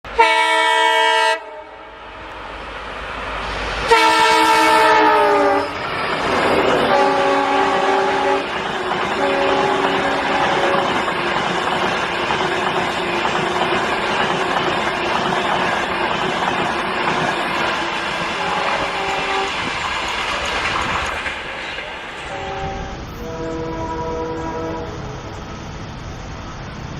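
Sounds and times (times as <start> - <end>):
rushing rail noise: 0.0 - 26.9
train horn: 0.1 - 2.0, 3.8 - 5.8, 6.4 - 11.0, 18.4 - 19.6, 22.2 - 25.2
train wheel clatter: 3.9 - 24.0.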